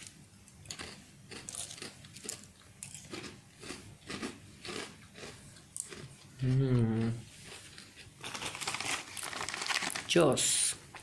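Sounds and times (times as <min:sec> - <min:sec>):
person chewing crunchy cereal: 0:00.0 - 0:10.2.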